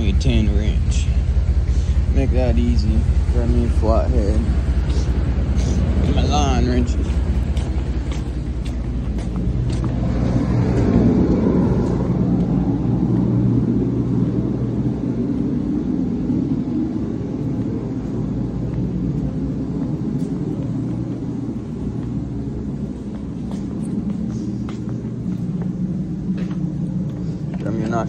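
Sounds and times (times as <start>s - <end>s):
diesel truck engine idling: 0.0s - 28.0s.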